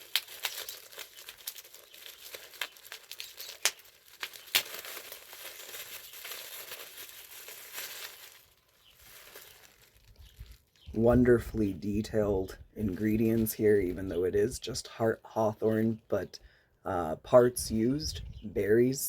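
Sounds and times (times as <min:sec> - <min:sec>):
packaging crinkling: 0:00.0 - 0:10.9.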